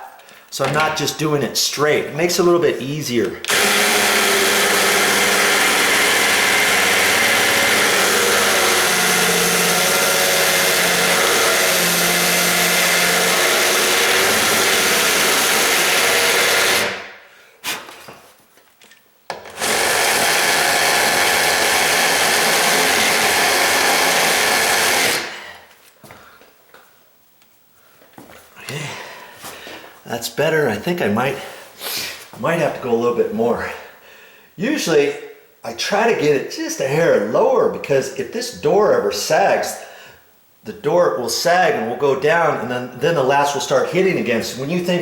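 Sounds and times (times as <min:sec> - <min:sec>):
electric drill grinding steel: 0:03.5 - 0:17.1, 0:19.4 - 0:25.6.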